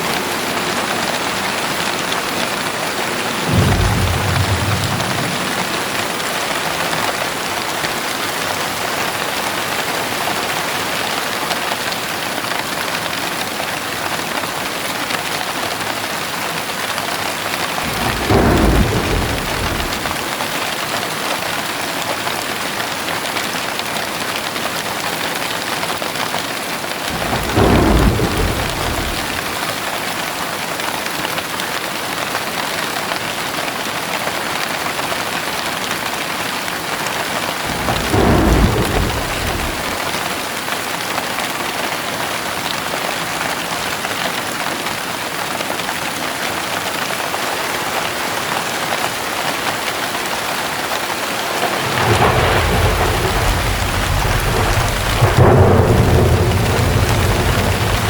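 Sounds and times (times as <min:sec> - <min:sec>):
heavy rain falling: 0:00.0 - 0:58.0
low rolls of thunder: 0:00.1 - 0:08.1, 0:17.6 - 0:20.6, 0:27.1 - 0:30.0, 0:37.5 - 0:40.6, 0:51.5 - 0:58.0.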